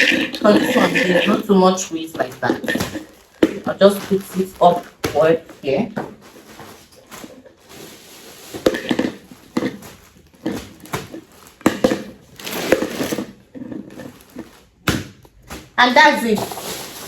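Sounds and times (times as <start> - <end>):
bag rustling and crinkling: 0.0 - 17.0.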